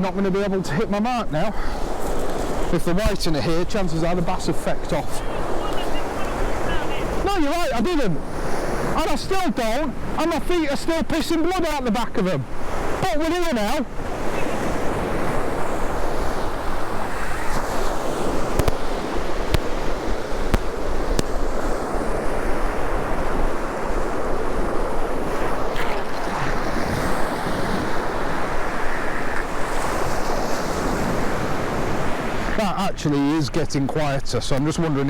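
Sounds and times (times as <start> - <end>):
surf washing on sandy beach: 0.0 - 35.0
wind buffeting microphone: 1.3 - 11.7, 12.4 - 32.6
faint clicks: 2.0 - 2.5, 18.5 - 19.9.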